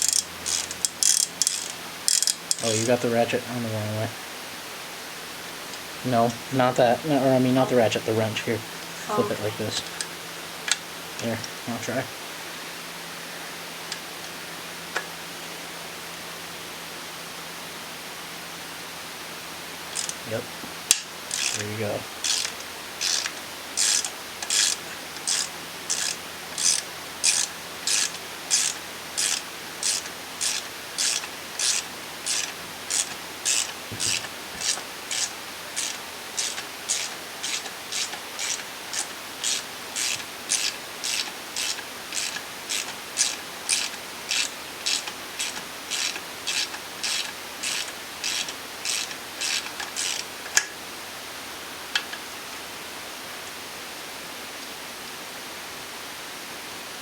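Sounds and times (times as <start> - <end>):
ratcheting wrench clicking: 0.0 - 2.9, 19.9 - 20.2, 20.9 - 21.6, 22.2 - 50.7.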